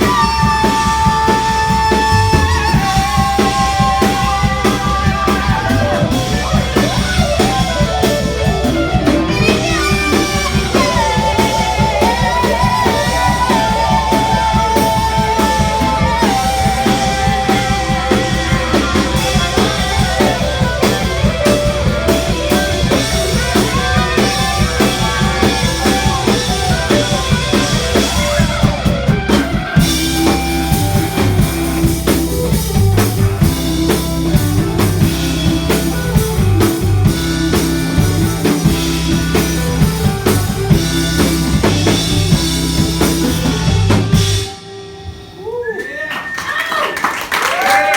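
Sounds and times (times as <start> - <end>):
bass guitar: 0.0 - 45.5
wavering lead melody: 0.0 - 45.5
drum kit beat: 0.0 - 45.6
electric guitar: 0.0 - 45.6.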